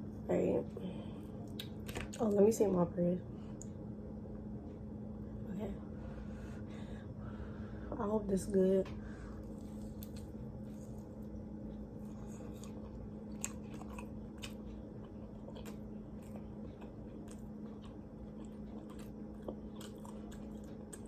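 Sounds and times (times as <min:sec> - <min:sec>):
low hum: 0:00.0 - 0:21.0
chewing and biting food: 0:09.4 - 0:21.0.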